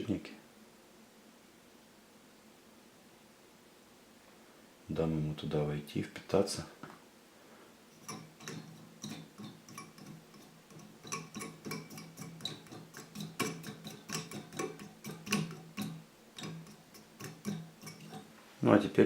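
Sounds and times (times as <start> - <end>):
plastic fan clicks and taps: 8.1 - 18.2.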